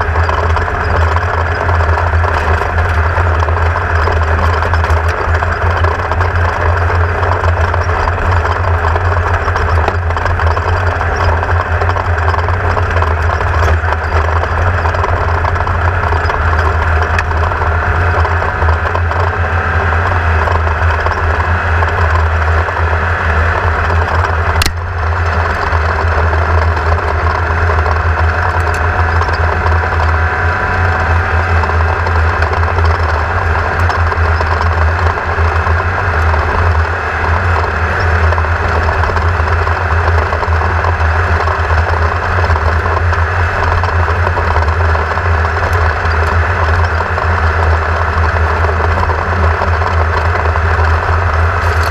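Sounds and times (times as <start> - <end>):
race car engine running: 0.0 - 51.9
sharp click: 24.5 - 24.9.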